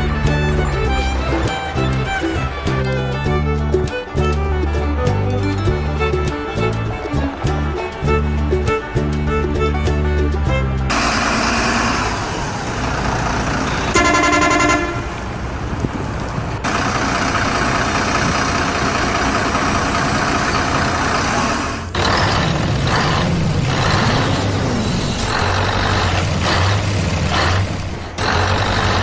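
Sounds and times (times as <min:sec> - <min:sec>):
music: 0:00.0 - 0:12.5
road noise: 0:00.0 - 0:29.0
truck engine: 0:00.0 - 0:29.0
truck horn blast: 0:10.4 - 0:12.5, 0:13.4 - 0:15.4.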